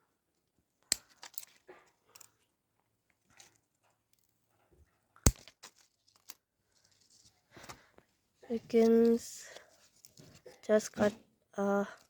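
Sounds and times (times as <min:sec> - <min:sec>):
soft rustles: 0:05.7 - 0:11.1.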